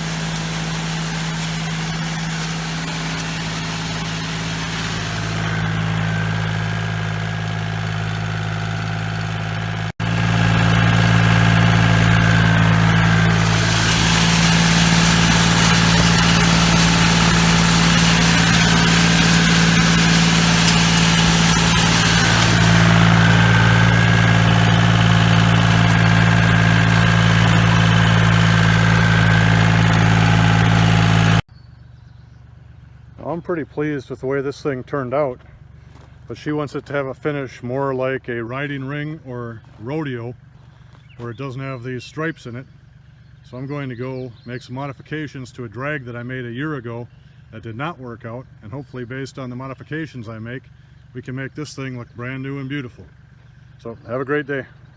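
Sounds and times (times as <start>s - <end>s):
tractor engine running: 0.0s - 31.5s
box blade scraping gravel: 13.2s - 26.1s.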